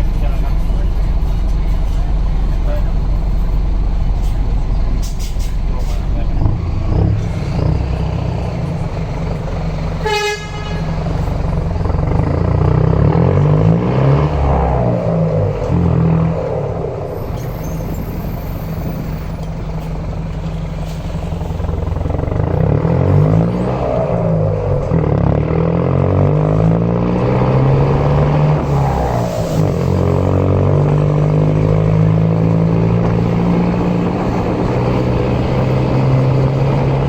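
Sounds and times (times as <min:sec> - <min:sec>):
diesel bus engine accelerating: 0:00.0 - 0:37.0
bus horn toot: 0:10.0 - 0:11.6.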